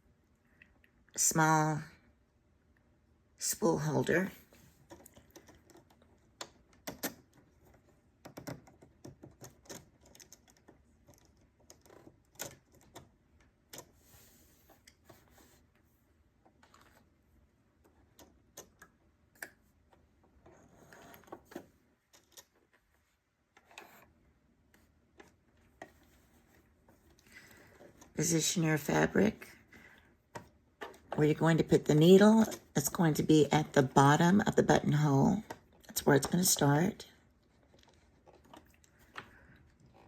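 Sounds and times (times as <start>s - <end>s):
soft rustling of fabric: 13.9s - 18.1s, 19.7s - 33.5s.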